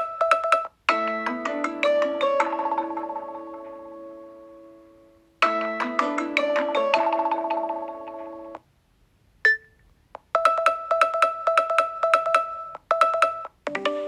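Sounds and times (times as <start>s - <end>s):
chiming mallet-like melody: 0.0s - 4.8s, 5.4s - 8.6s
fast two-pitch repeating beep: 9.5s - 9.8s.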